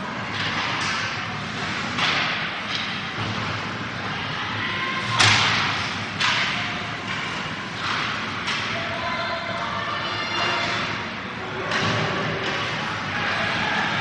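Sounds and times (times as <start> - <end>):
hockey puck hits and skate scrapes: 0.3 - 4.1.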